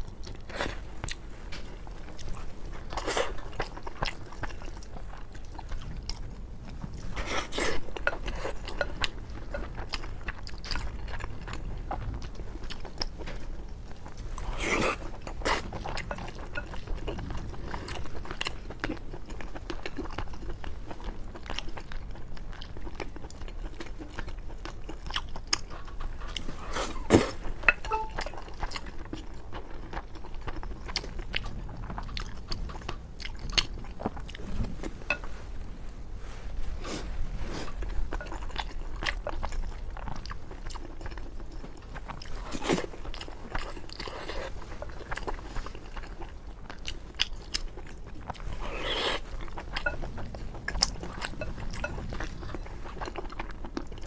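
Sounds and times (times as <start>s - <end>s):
close-up chewing: 0.0s - 54.0s
utensils clinking on a dish: 27.6s - 28.3s.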